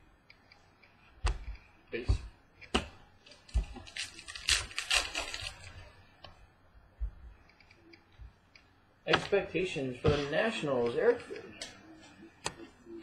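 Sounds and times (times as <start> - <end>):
crackly rustling of card sleeves: 3.2 - 6.2.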